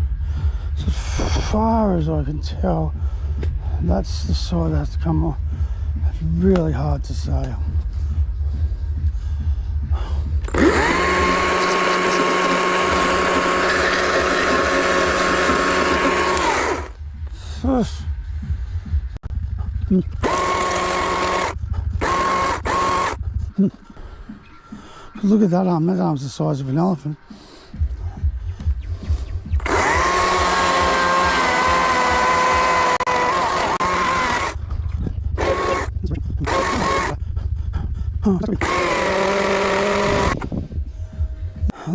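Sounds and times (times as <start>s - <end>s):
chainsaw high-pitched whine: 10.5s - 17.0s, 20.2s - 23.2s, 29.6s - 34.6s, 35.4s - 37.2s, 38.6s - 40.4s.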